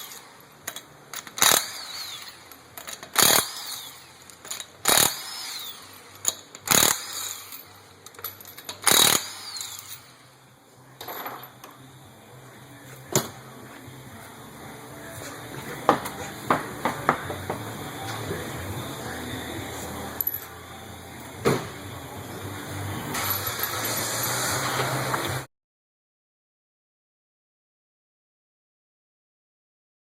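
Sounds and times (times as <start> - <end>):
impact wrench bursts: 0.0 - 10.2, 23.1 - 25.2.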